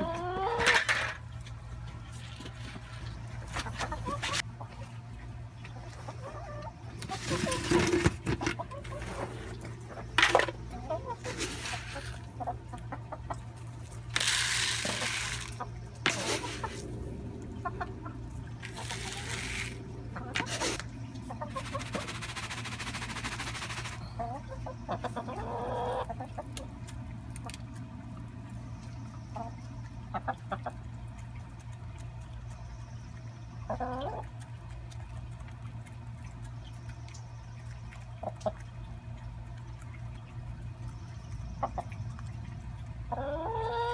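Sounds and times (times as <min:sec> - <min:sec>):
steady low hum: 0:00.0 - 0:43.5
chickens clucking: 0:00.0 - 0:43.9
bursts of hissing noise: 0:14.1 - 0:16.9, 0:18.6 - 0:20.8.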